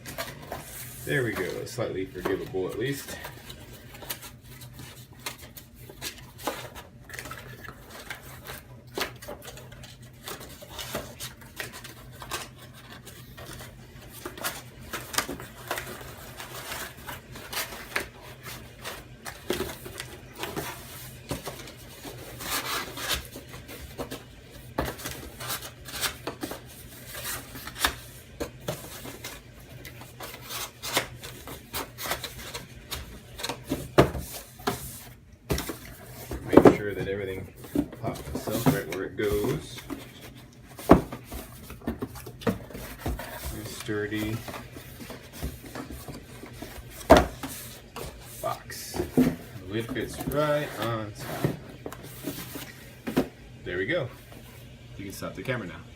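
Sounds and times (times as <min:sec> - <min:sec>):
cardboard rubbing and scraping: 0:00.0 - 0:53.3.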